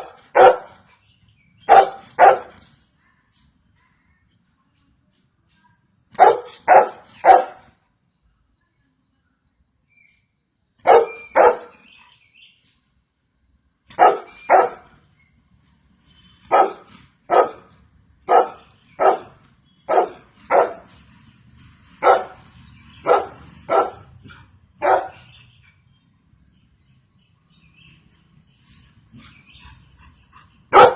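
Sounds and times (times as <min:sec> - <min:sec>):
dog barking: 0:00.0 - 0:00.8, 0:01.6 - 0:02.6, 0:06.2 - 0:07.7, 0:10.8 - 0:11.9, 0:13.9 - 0:14.9, 0:16.5 - 0:17.7, 0:18.3 - 0:20.9, 0:22.0 - 0:22.4, 0:23.0 - 0:25.4.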